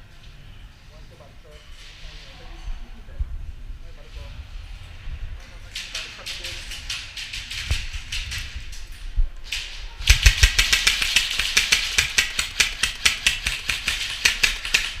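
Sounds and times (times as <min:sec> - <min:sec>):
airsoft gun firing: 0:10.0 - 0:15.0.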